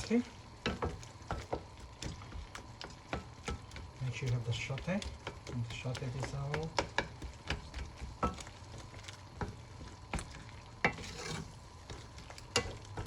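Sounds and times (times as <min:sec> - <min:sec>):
faint sizzle: 0:00.0 - 0:13.0
spoon scraping a pot: 0:09.4 - 0:13.0.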